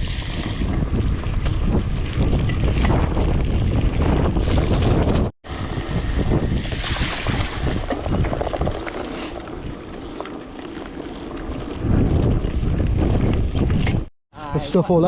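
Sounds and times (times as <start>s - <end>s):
wind buffeting microphone: 0.0s - 14.1s.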